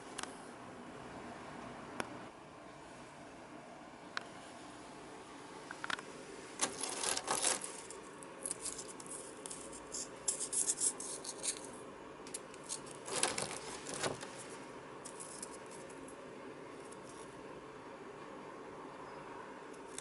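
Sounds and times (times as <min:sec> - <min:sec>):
small hard objects clicking and rattling: 0:06.6 - 0:14.3, 0:15.0 - 0:16.1.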